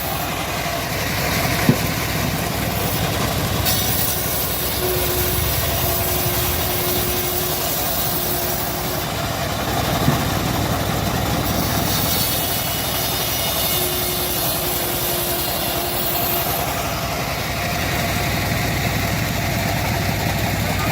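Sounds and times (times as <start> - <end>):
band sawmill running: 0.0 - 20.9
faint tone: 4.6 - 7.6.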